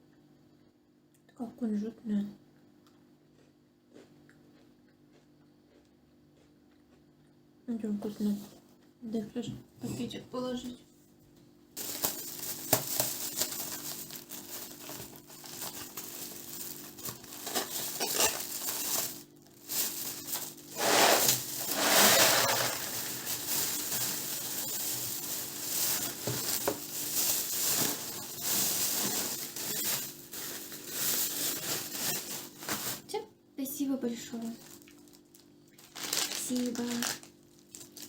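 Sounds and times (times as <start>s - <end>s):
faint steady hum: 0.0s - 38.0s
plastic bag crinkling: 11.8s - 33.2s, 34.4s - 38.0s.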